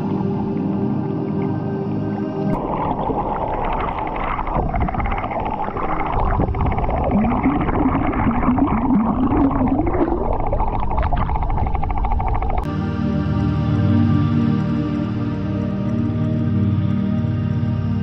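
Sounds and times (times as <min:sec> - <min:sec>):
wavering low tone: 0:00.0 - 0:12.7
waterfall rushing: 0:02.5 - 0:11.0.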